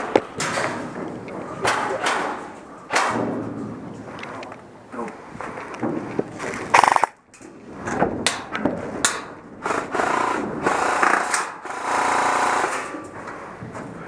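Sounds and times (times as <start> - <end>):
airsoft guns firing in bursts: 6.7 - 7.2
sharp clicks: 6.7 - 7.2.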